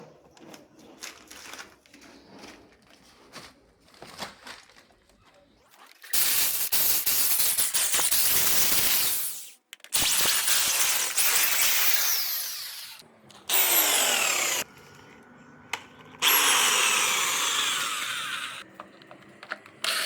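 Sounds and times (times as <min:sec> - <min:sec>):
power drill running: 0:08.4 - 0:14.7, 0:15.7 - 0:18.6.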